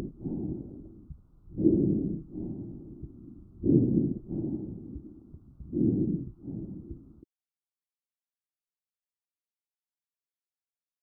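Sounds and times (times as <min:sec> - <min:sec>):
breath sounds through stethoscope: 0:00.0 - 0:07.2.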